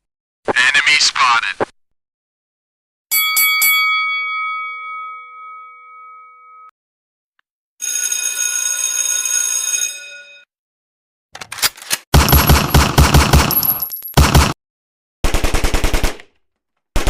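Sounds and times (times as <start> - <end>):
bell ringing: 3.1 - 6.7
rapid machine-gun fire: 12.1 - 14.6, 15.2 - 16.2.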